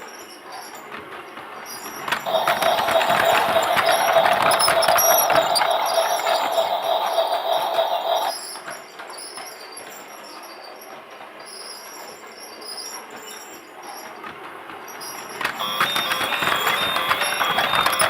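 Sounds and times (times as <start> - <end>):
toy train running: 2.1 - 8.7, 15.0 - 18.0.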